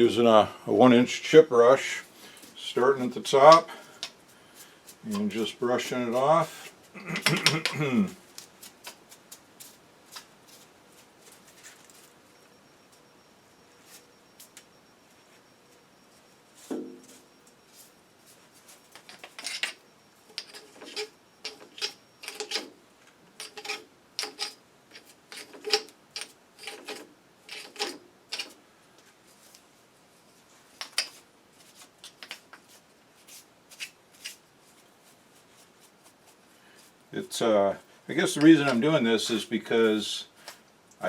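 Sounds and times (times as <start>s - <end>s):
brush sweeping metal shavings: 4.6s - 6.7s.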